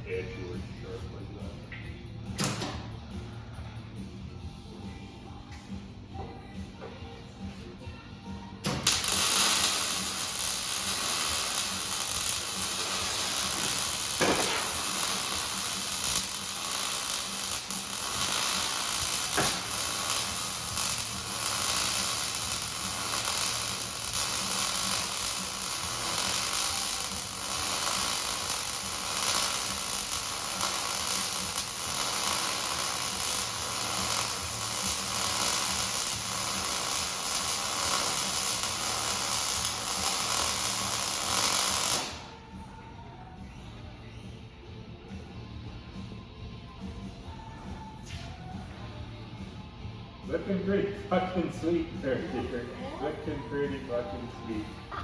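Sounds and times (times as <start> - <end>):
welding arc crackling and hissing: 8.7 - 42.4.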